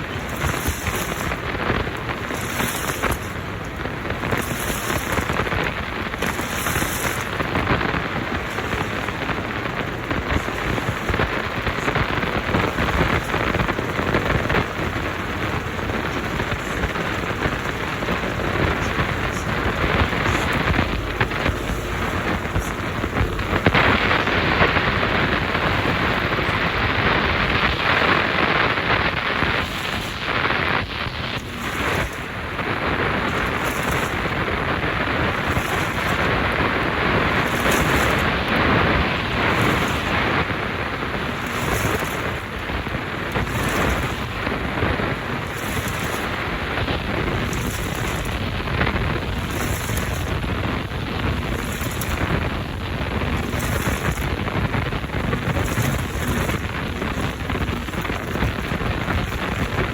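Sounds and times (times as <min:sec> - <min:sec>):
water pouring into washing machine: 0:00.0 - 0:30.4.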